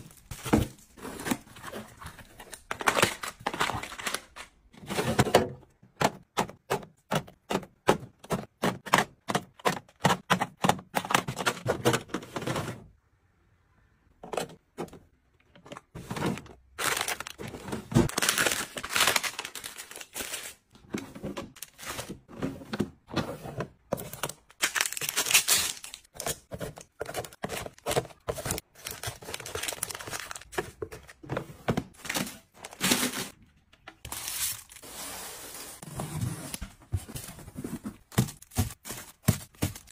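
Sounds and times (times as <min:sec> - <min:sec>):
plastic wrappers crinkling: 0:16.7 - 0:20.7, 0:24.1 - 0:26.4, 0:27.2 - 0:30.9.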